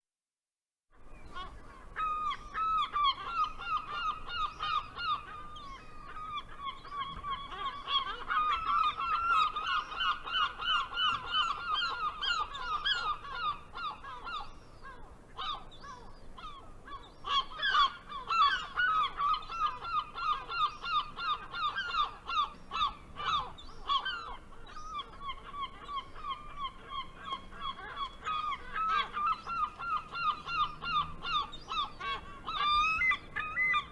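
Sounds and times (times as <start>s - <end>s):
gulls calling: 15.5s - 33.9s.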